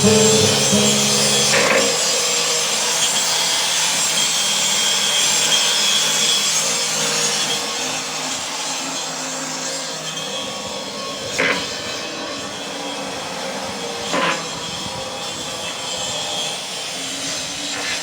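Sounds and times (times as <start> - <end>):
guitar music: 0.0 - 2.4.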